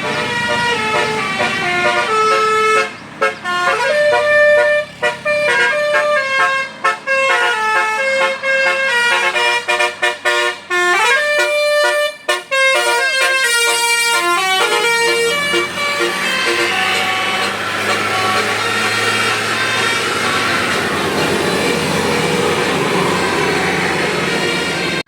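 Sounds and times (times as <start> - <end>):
bus multi-tone horn tune: 0.0 - 25.0.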